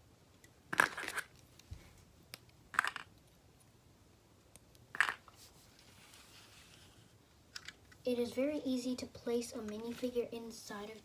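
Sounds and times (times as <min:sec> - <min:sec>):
plastic pieces clicking and rattling: 0:00.7 - 0:01.4, 0:02.7 - 0:03.2, 0:07.5 - 0:07.9.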